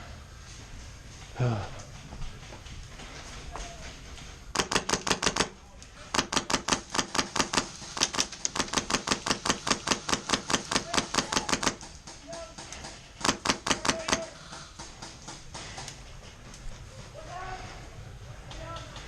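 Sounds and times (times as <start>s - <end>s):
airsoft guns firing rapidly: 4.6s - 15.1s.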